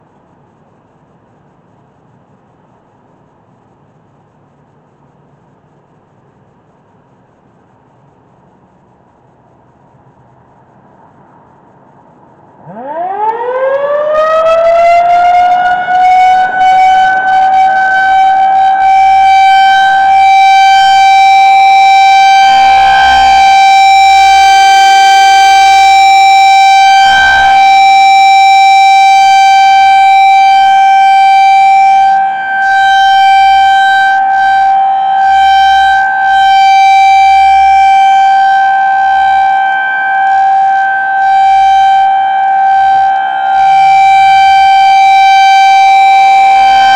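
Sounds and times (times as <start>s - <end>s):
loud high-pitched warning siren: 12.6s - 46.9s.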